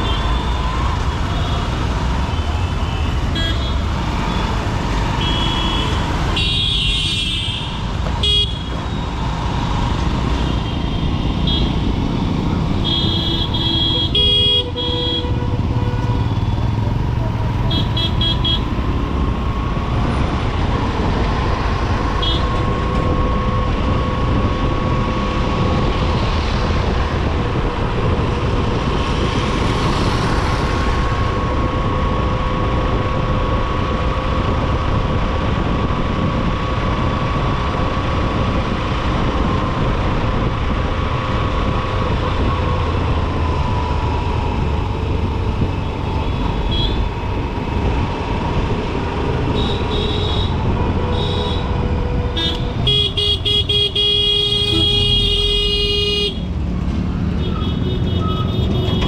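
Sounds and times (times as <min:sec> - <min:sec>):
wind rushing over microphone: 0:18.6 - 0:55.6
horn toots: 0:49.5 - 0:56.5.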